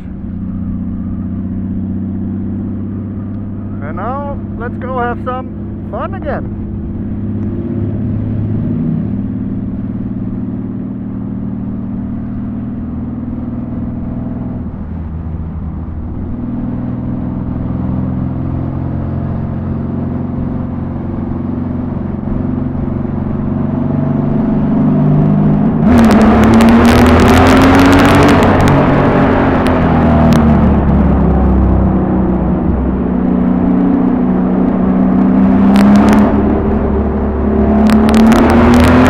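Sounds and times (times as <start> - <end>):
motorcycle engine running: 0.0 - 24.6.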